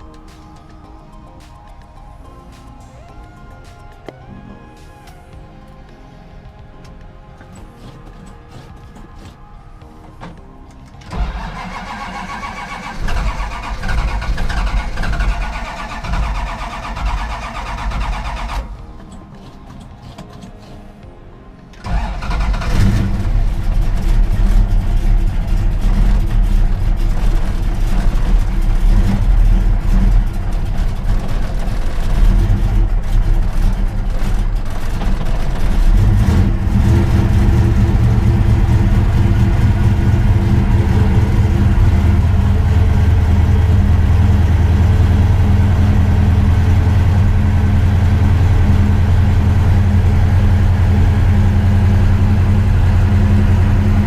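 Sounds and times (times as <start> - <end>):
car engine idling unevenly: 21.7 - 54.0.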